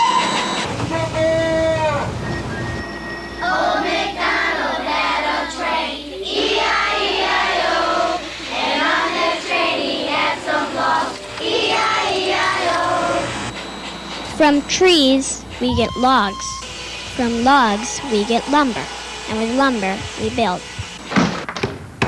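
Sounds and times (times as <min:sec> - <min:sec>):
children singing: 0:03.4 - 0:13.5, 0:17.2 - 0:20.8.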